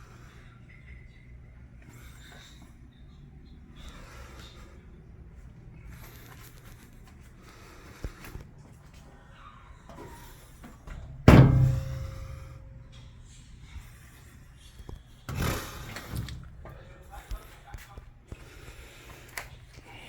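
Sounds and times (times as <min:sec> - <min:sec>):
low steady hum: 0:00.0 - 0:20.0
hard slam ringing: 0:10.9 - 0:13.2.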